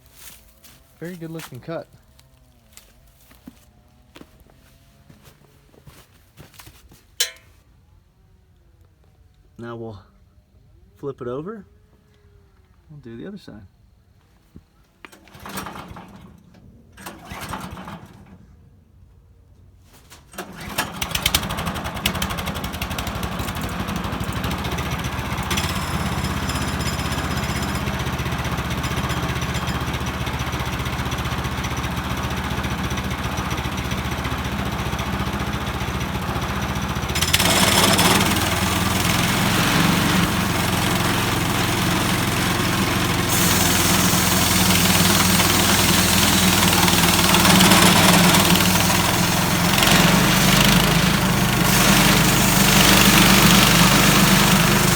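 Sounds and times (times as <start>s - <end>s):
small gasoline engine running: 15.1s - 18.4s, 20.4s - 54.9s.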